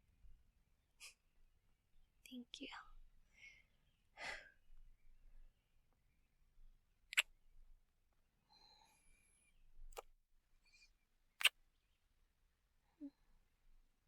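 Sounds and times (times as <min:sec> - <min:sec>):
faint breathing: 0:03.2 - 0:04.6, 0:08.4 - 0:09.7
kisses with lip smacks: 0:07.1 - 0:07.3.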